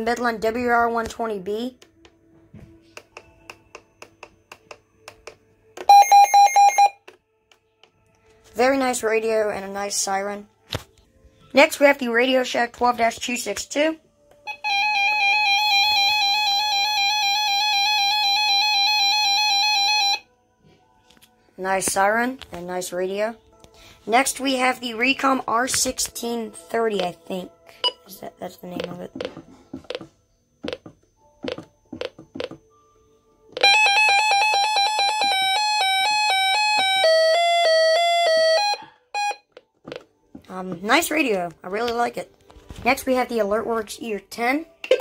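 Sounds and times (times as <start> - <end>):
electronic alert beeping tones: 5.8 - 7.0, 27.8 - 32.6
warbling electronic alert siren: 14.5 - 20.2, 33.6 - 39.5.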